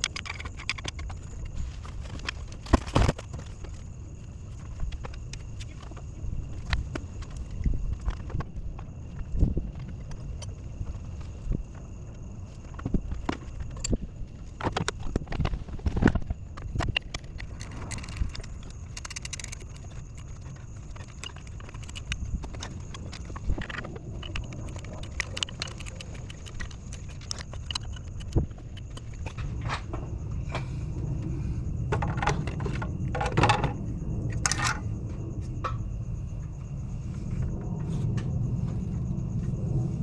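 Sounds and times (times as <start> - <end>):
rapid clicks: 14.6 - 29.4
hand tools knocking and clinking: 31.9 - 34.8.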